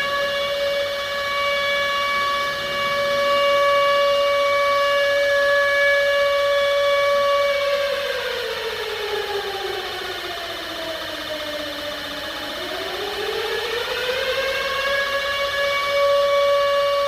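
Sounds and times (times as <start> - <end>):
civil defence siren steady tone: 0.0 - 17.0.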